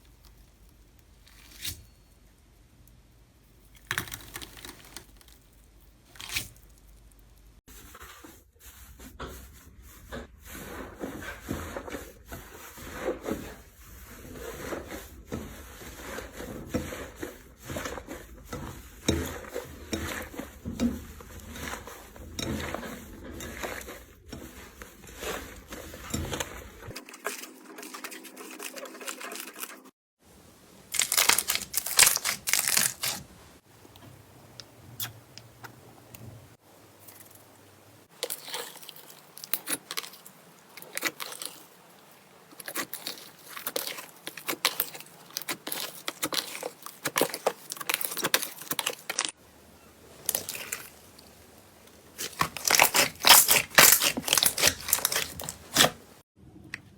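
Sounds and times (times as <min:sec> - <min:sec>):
slime crackling and popping: 0:30.9 - 0:33.2, 0:52.2 - 0:56.0.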